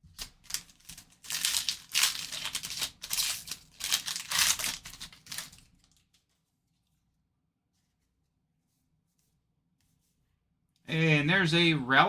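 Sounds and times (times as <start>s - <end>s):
plastic wrapper crinkling and tearing: 0.0s - 6.3s.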